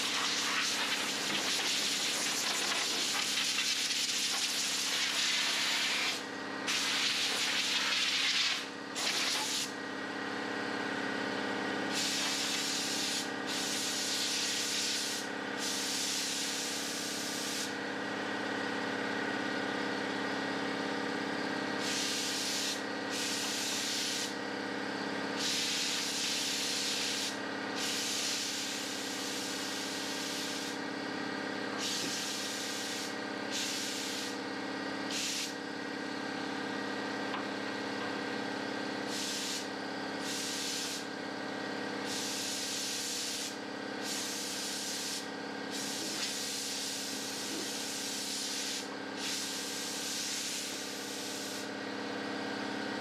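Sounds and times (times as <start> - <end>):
mechanical hum: 0.0 - 53.0
paint spray hissing: 11.9 - 17.7, 21.8 - 24.3, 25.4 - 28.7, 31.8 - 34.3, 35.1 - 35.5, 39.1 - 39.6, 40.2 - 41.0, 42.1 - 46.9, 47.8 - 51.6.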